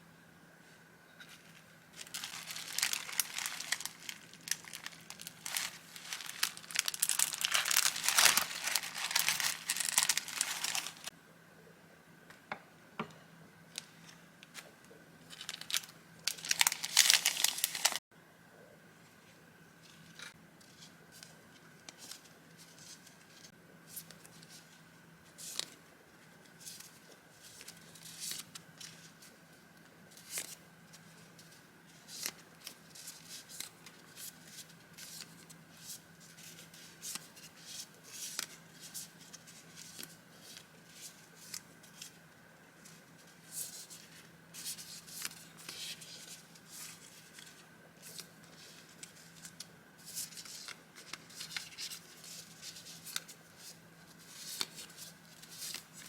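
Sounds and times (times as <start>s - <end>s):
packaging crinkling and tearing: 2.0s - 11.1s, 15.3s - 18.0s.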